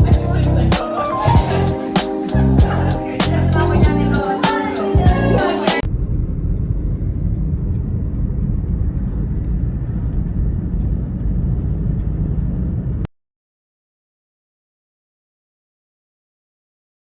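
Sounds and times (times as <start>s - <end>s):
steady low rumble: 5.9s - 13.1s.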